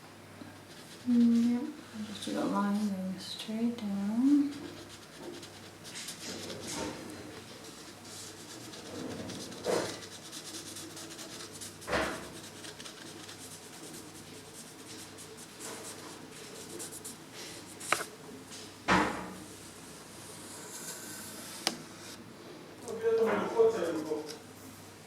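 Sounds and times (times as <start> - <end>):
loud brushing sounds: 4.5 - 18.1.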